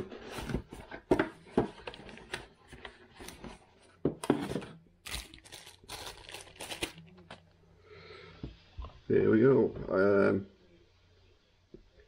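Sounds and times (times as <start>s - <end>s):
box packaging being opened: 4.2s - 7.4s.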